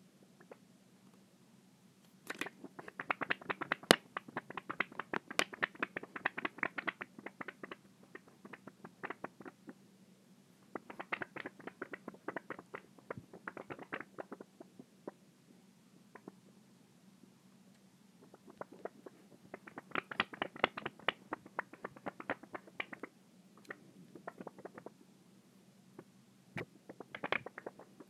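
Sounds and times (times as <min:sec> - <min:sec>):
rapid irregular clicking: 0:02.2 - 0:09.8, 0:10.7 - 0:14.6, 0:18.3 - 0:24.9, 0:26.6 - 0:28.0.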